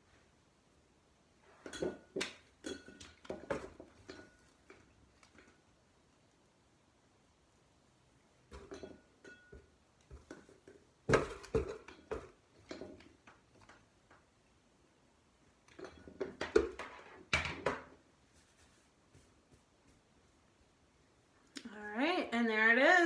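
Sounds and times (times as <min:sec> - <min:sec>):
small hard objects knocking: 0:08.5 - 0:14.3.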